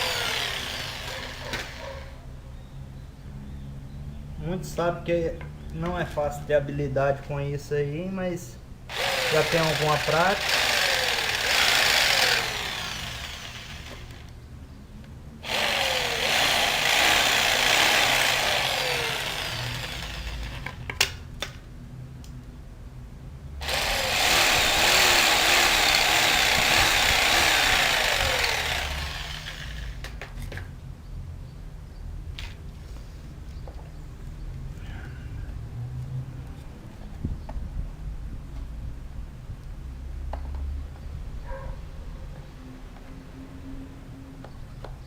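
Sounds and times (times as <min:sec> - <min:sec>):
power tool cutting: 0:00.0 - 0:02.1, 0:08.9 - 0:14.3, 0:15.4 - 0:20.8, 0:23.6 - 0:30.1.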